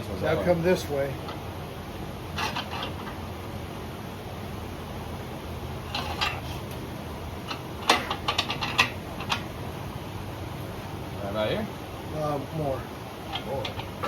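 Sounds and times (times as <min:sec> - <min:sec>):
steady low hum: 0:00.0 - 0:14.0
metallic clicks and knocks: 0:07.4 - 0:09.5.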